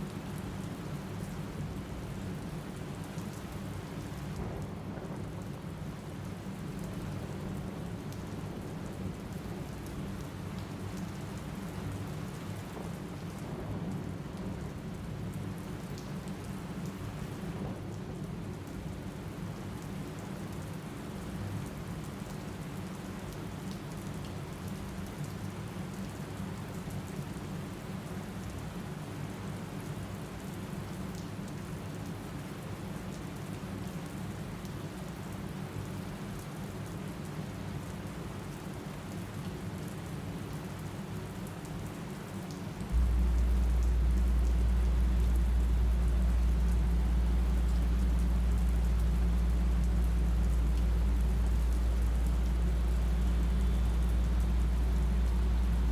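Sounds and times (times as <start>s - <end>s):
rain pattering: 0.0s - 55.9s
loud deep rumble: 43.0s - 55.9s.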